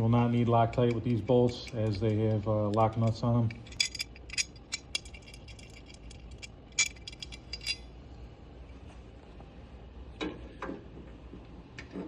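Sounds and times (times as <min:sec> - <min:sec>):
metal bolts clinking: 0:00.0 - 0:08.0.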